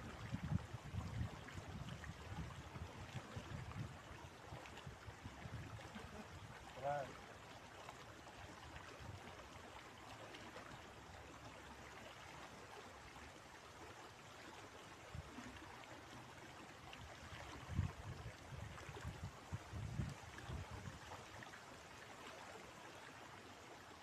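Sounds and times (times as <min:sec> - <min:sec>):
wind rumbling on microphone: 0:00.0 - 0:06.6, 0:17.1 - 0:21.3
river water running: 0:00.0 - 0:24.0.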